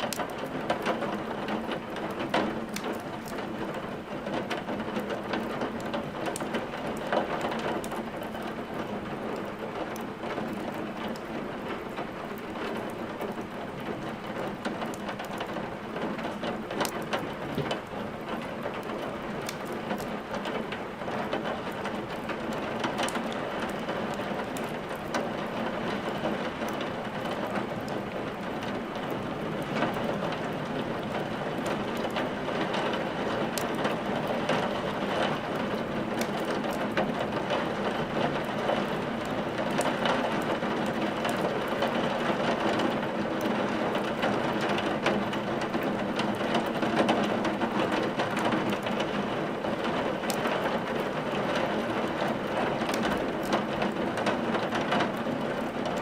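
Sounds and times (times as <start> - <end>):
steady rain: 0.0 - 56.0
wood fire crackling: 0.0 - 56.0
fire popping: 16.2 - 20.2.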